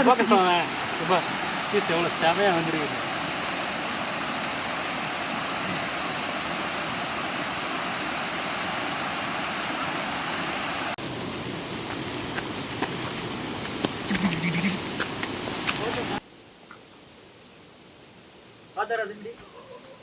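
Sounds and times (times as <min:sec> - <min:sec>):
river water rushing: 0:00.0 - 0:16.2.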